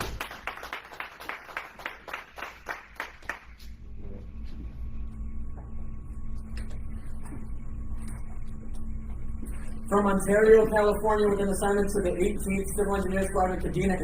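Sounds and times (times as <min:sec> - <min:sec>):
group clapping in rhythm: 0:00.0 - 0:03.7
low sound system hum: 0:00.0 - 0:14.0.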